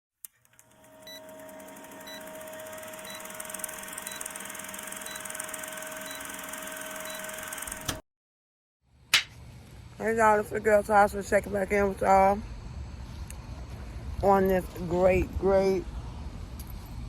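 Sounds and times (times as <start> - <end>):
electronic hum: 0.5 - 8.0.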